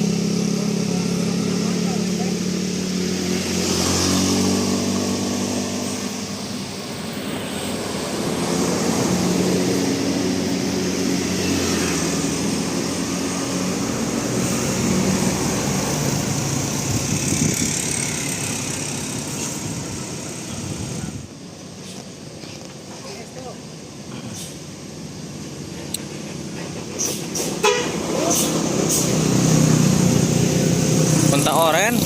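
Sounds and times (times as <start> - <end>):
bus engine drone: 0.0 - 32.0
road noise: 0.0 - 32.0.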